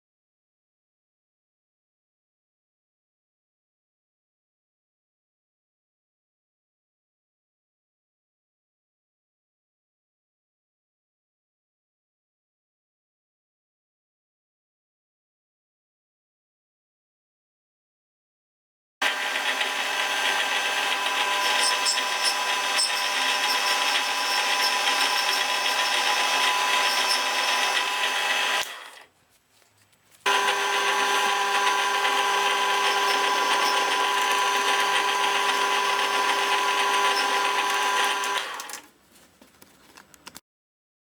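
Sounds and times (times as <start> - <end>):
electric power tool running: 19.0 - 29.1, 30.2 - 38.9.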